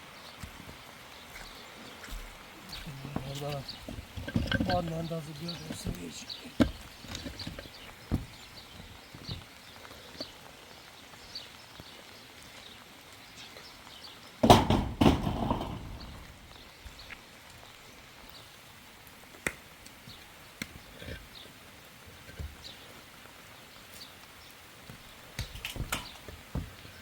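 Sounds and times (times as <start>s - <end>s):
sharp knocks and clicks: 2.7s - 8.4s, 14.4s - 16.3s
loud clattering burst: 14.4s - 16.4s.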